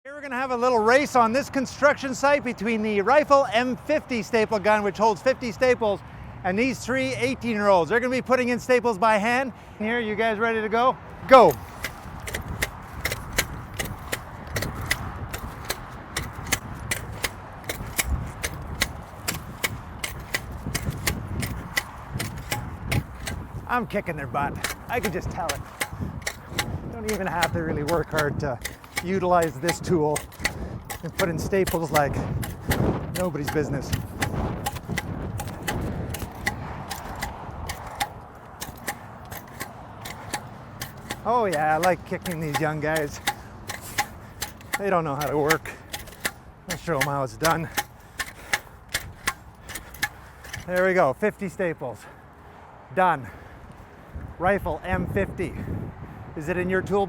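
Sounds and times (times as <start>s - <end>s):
staple gun clacking: 11.3s - 23.6s, 24.5s - 50.9s.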